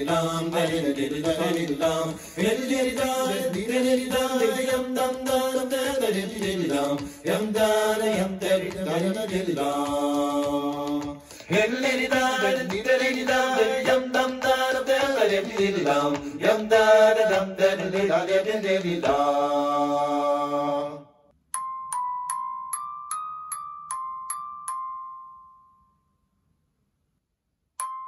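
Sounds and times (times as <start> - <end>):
wordless chant-like vocals: 0.0 - 21.1.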